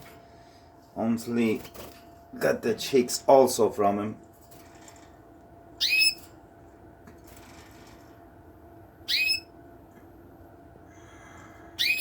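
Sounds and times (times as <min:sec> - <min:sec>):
canary whistle-like call: 0:09.1 - 0:09.5, 0:11.8 - 0:12.0
faint high chirps: 0:09.1 - 0:09.5, 0:11.8 - 0:12.0.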